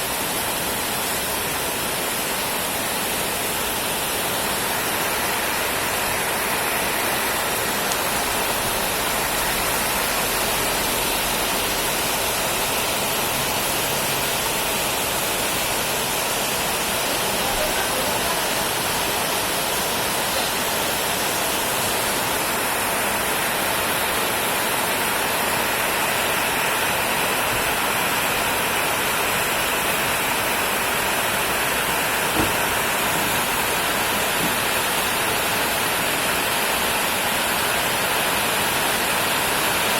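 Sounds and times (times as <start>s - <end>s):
rain falling: 0.0s - 39.9s
short tap: 32.4s - 32.6s.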